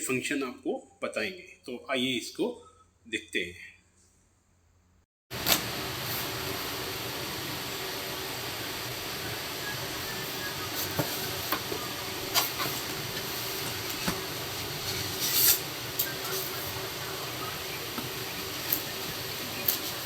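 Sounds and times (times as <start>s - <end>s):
steady loud hiss: 5.4s - 20.0s.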